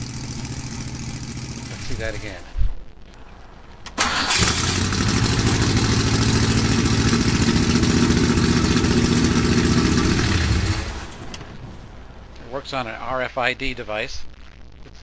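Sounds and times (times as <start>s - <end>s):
car engine idling: 0.0s - 2.4s, 4.0s - 12.3s
car engine starting: 0.0s - 2.4s, 3.9s - 12.3s.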